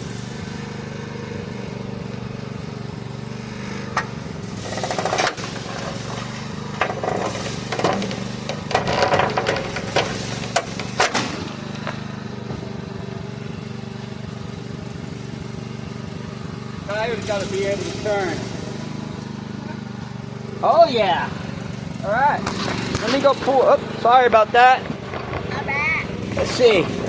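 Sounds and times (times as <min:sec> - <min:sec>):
engine idling: 0:00.0 - 0:27.0
metal bangs and scraping: 0:03.4 - 0:12.8, 0:22.1 - 0:27.0.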